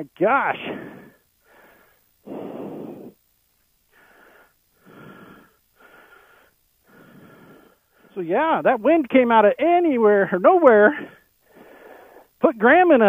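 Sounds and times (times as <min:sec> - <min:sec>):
person breathing hard: 0:00.6 - 0:03.2, 0:03.9 - 0:08.2, 0:11.0 - 0:12.4.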